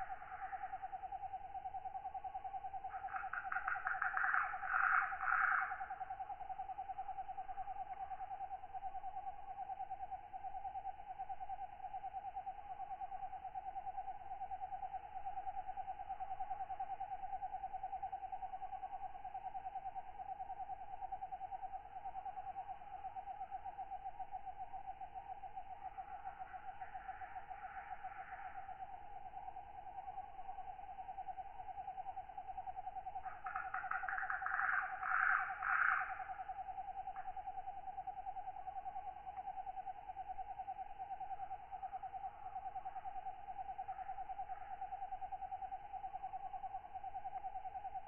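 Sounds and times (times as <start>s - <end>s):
night insects trilling: 0.0s - 48.0s
katydid rasping calls: 33.4s - 36.3s.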